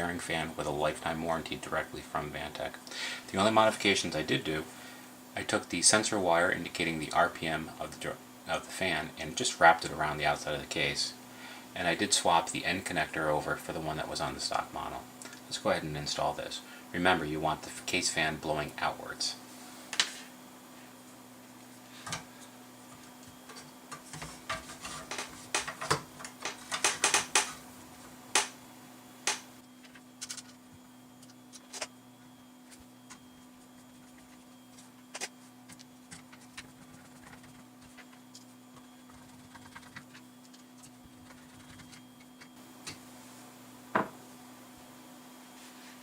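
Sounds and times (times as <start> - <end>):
steady low hum: 0.0 - 46.0.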